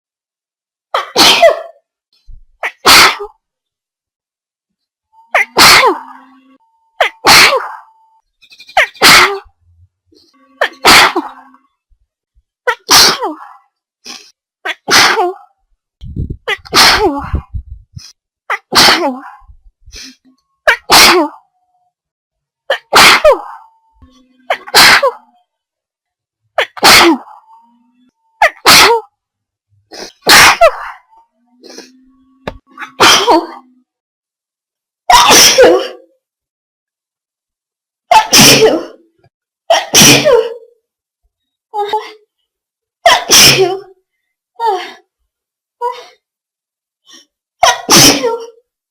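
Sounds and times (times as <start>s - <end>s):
person sneezing: 1.0s - 1.8s, 2.6s - 3.3s, 5.4s - 6.0s, 7.0s - 7.7s, 10.6s - 11.3s, 12.7s - 13.4s, 14.1s - 15.4s, 16.5s - 19.2s, 20.0s - 21.4s, 22.7s - 23.5s, 24.5s - 25.2s, 26.6s - 27.3s, 28.4s - 29.0s, 29.9s - 30.8s, 32.8s - 33.6s, 35.1s - 36.1s, 38.1s - 39.0s, 39.7s - 40.6s, 43.1s - 43.9s, 47.6s - 48.6s.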